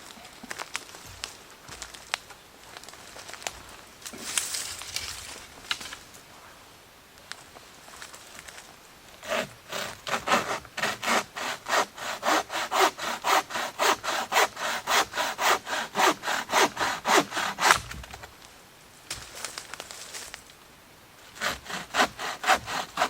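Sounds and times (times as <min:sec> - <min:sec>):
hand saw cutting wood: 0:09.2 - 0:17.9, 0:21.4 - 0:23.0.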